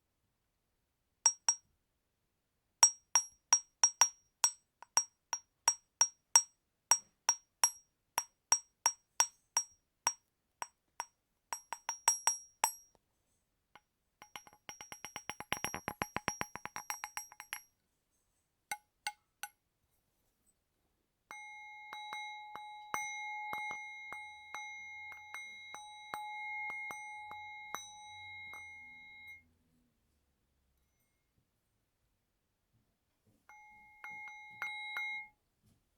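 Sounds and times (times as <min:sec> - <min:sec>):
small metal bells ringing: 0:14.2 - 0:17.7, 0:21.3 - 0:29.4, 0:33.5 - 0:35.3.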